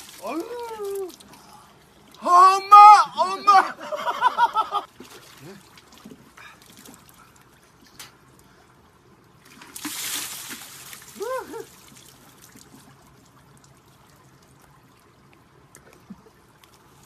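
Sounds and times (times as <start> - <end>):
water pouring splash: 0.0 - 1.2, 9.5 - 12.9
stream water trickling: 0.0 - 17.0.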